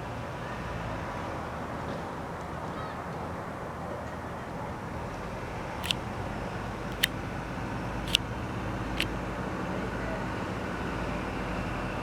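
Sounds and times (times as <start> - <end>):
sharp high clicks: 5.8 - 7.2.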